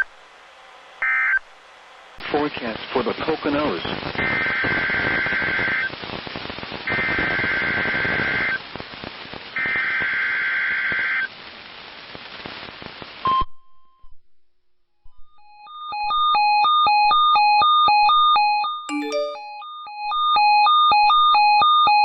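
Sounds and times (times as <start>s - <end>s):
steady alert tone: 18.9s - 19.6s.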